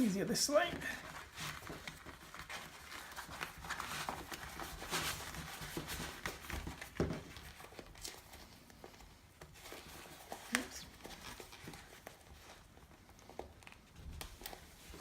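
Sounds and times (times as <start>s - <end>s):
tool roll rustling: 0.0s - 12.8s.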